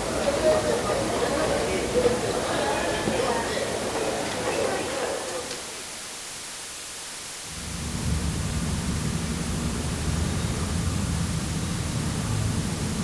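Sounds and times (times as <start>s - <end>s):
steady hiss: 0.0s - 13.0s
low continuous rumble: 7.5s - 13.0s.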